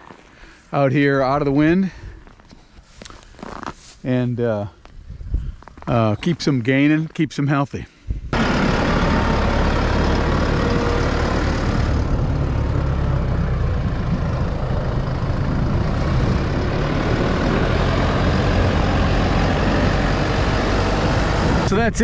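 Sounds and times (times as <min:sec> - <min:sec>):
heavy vehicle engine rumbling: 0:08.3 - 0:22.0.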